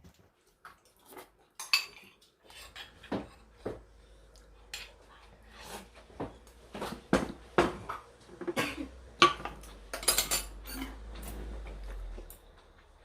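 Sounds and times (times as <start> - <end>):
utensils clinking against dishes: 1.6 - 3.5, 8.4 - 12.4.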